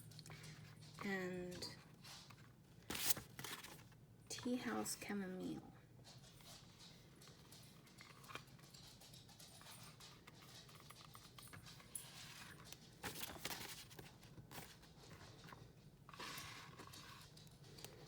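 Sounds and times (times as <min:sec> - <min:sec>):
notebook cover rustling and tapping: 0:10.2 - 0:18.0.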